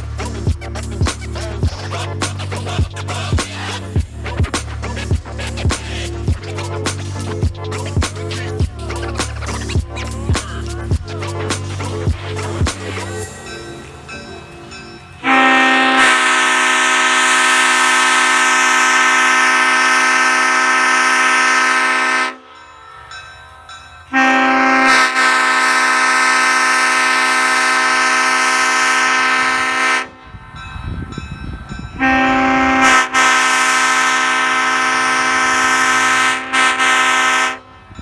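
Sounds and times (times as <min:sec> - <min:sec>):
locomotive air horn blasts: 0:15.2 - 0:22.5, 0:24.1 - 0:30.3, 0:32.0 - 0:37.8.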